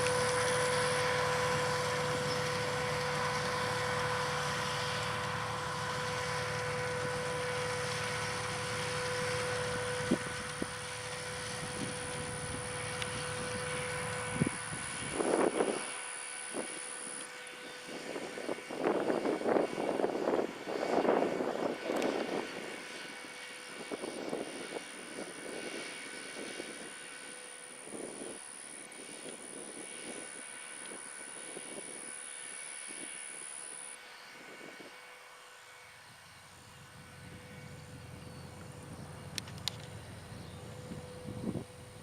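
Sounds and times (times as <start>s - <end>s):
tractor engine running: 0.0s - 17.2s, 36.3s - 42.0s.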